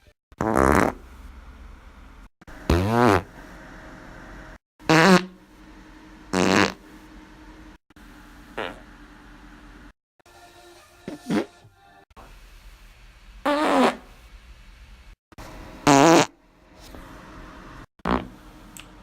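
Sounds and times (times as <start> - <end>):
farts: 0.4 - 1.1, 2.7 - 3.3, 4.9 - 5.4, 6.3 - 6.8, 8.6 - 8.9, 11.1 - 11.6, 13.4 - 14.2, 15.8 - 16.3, 18.0 - 18.4.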